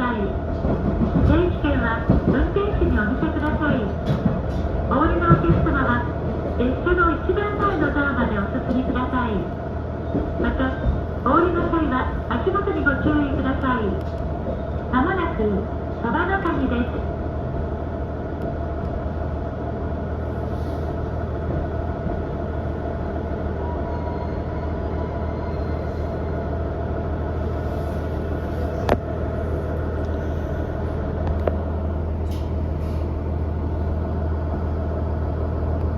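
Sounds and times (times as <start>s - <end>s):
wheel and rail rumble: 0.0s - 35.9s
low diesel drone: 25.3s - 35.9s.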